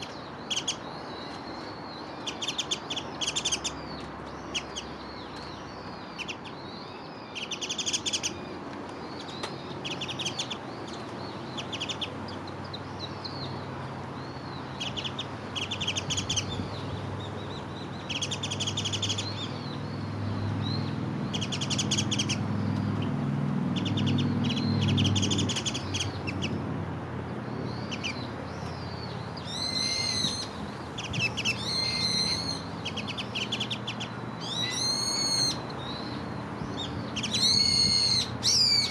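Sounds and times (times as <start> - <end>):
birds chattering calls: 0.0 - 38.9
shrill arching bird calls: 27.7 - 36.2, 37.1 - 38.9.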